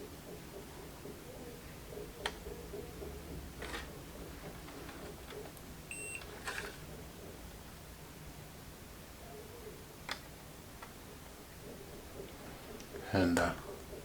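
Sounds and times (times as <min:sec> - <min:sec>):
multimeter beep: 0:05.9 - 0:06.3.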